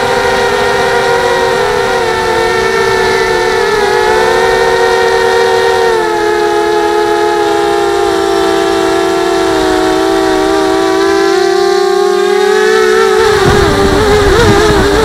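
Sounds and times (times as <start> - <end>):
drone propellers whining: 0.0 - 15.0.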